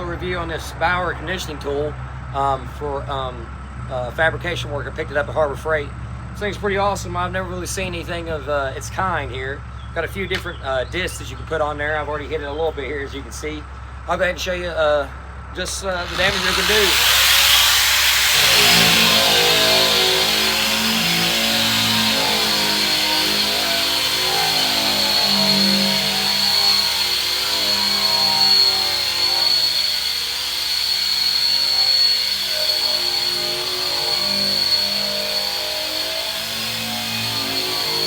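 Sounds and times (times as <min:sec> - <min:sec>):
power tool whining: 0:15.7 - 0:38.0.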